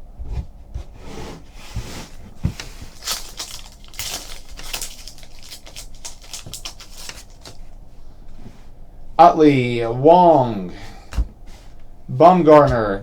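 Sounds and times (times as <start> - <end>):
cards rustling: 2.4 - 7.8
foil wrapper crinkling: 2.6 - 7.8.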